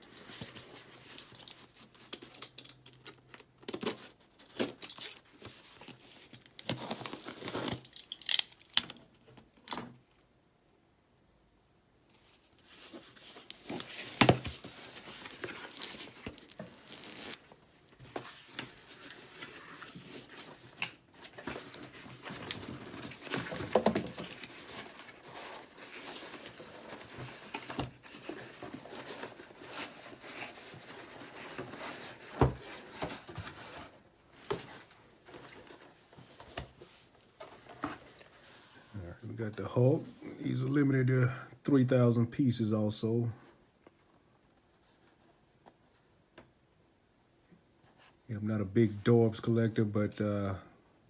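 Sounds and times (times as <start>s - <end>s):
cardboard and plastic rustling: 0.0s - 9.5s, 12.2s - 39.2s.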